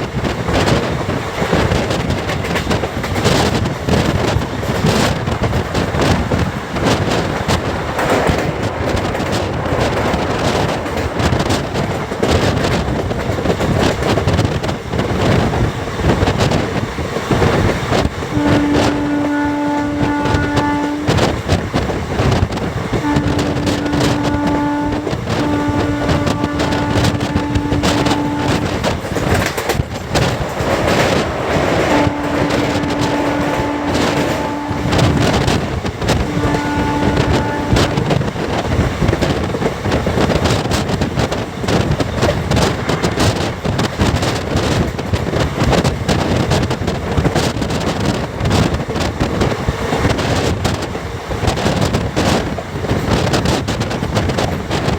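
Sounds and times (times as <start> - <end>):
train clatter and knocks: 0.0 - 54.9
train wheels rumbling on rails: 0.0 - 54.9.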